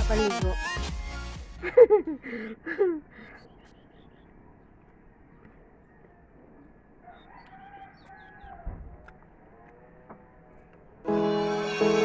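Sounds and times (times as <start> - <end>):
small birds chirping: 2.8 - 10.9
faint rooster crowing: 6.9 - 9.7.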